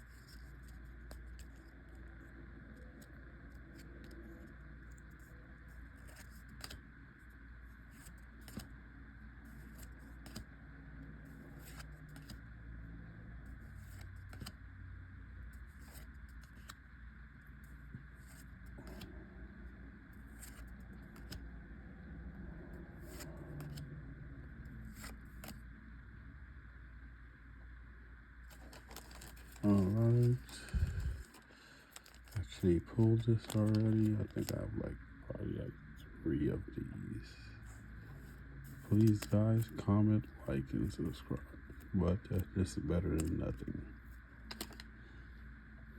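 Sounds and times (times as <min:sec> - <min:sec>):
steady low hum: 0:00.0 - 0:45.9
trading cards clicking and tapping: 0:38.9 - 0:39.3.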